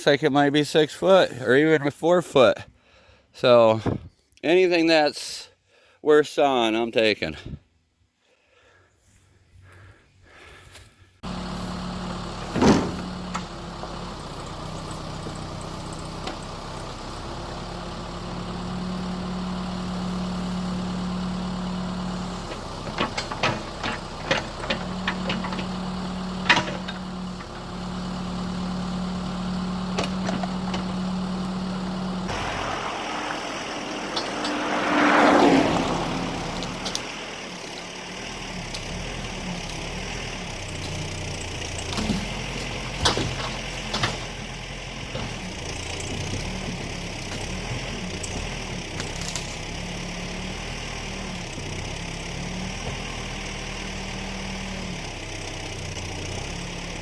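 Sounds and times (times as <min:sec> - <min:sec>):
engine idling: 0:09.6 - 0:57.0
rushing surge: 0:32.3 - 0:37.4.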